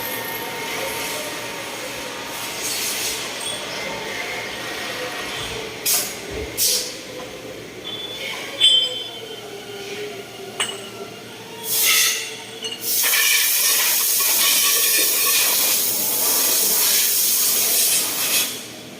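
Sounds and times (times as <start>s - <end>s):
steady loud hiss: 0.0s - 7.7s, 11.5s - 18.9s
brief squeal: 7.8s - 9.5s.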